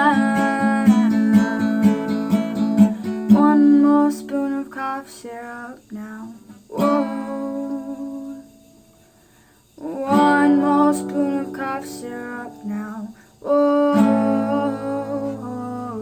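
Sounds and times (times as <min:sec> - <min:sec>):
acoustic guitar chords ringing: 0:00.0 - 0:16.0.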